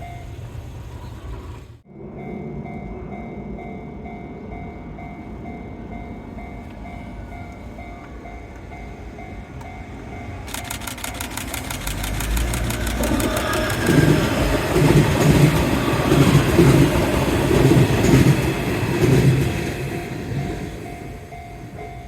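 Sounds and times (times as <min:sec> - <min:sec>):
crossing bell ringing: 0:00.0 - 0:00.9, 0:01.9 - 0:22.0
electric train passing: 0:00.0 - 0:22.0
wheels clacking over rail joints: 0:10.4 - 0:21.4.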